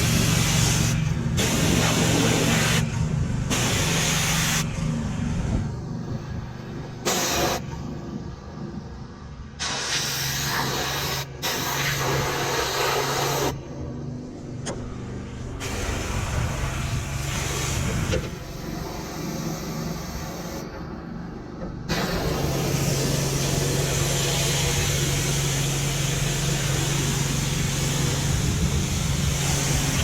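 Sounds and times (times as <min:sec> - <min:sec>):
pressure washer spray hissing: 0:00.0 - 0:02.9, 0:03.5 - 0:04.7, 0:07.0 - 0:07.6, 0:09.6 - 0:13.6, 0:15.6 - 0:20.6, 0:21.9 - 0:30.0.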